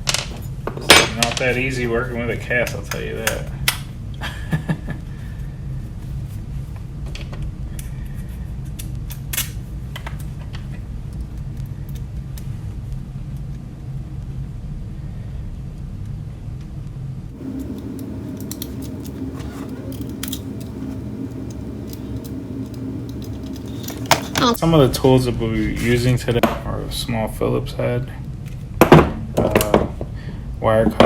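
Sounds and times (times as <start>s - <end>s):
steady low hum: 0.0s - 31.0s
metal hardware clicking: 17.4s - 24.4s.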